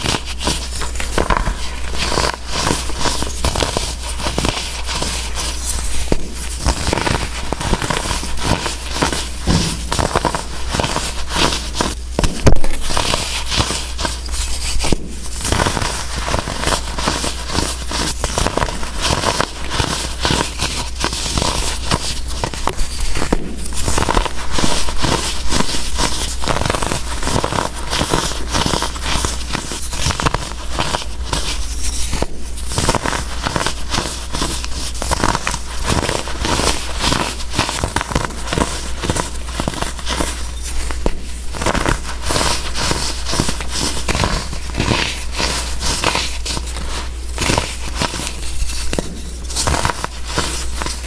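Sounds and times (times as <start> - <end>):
blocks crunching and crackling: 9.5 - 11.1.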